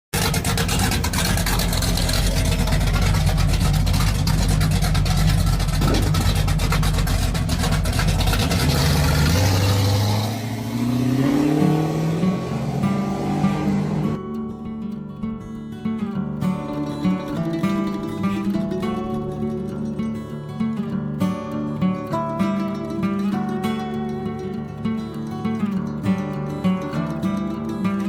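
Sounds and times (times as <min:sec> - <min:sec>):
car engine revving: 0:00.2 - 0:14.2.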